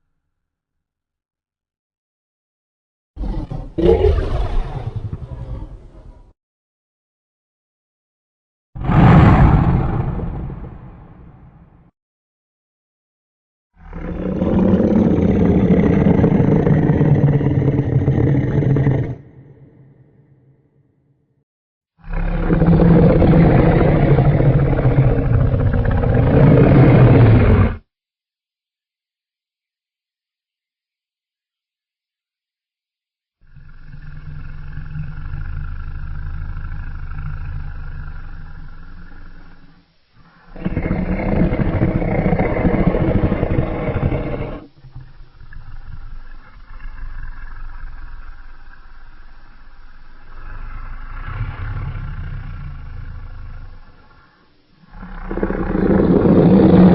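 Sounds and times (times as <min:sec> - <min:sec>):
monster roar: 0:03.2 - 0:06.3, 0:08.8 - 0:11.6, 0:22.0 - 0:27.8, 0:40.4 - 0:44.7, 0:54.9 - 0:56.9
low rumble: 0:08.8 - 0:11.9.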